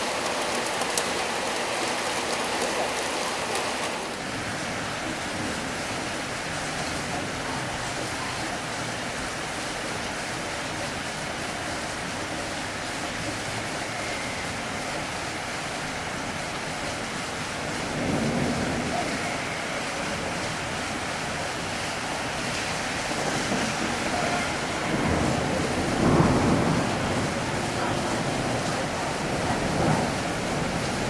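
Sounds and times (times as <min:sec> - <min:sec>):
rain pouring: 0:00.0 - 0:31.0
thunder rumbles: 0:17.3 - 0:31.0.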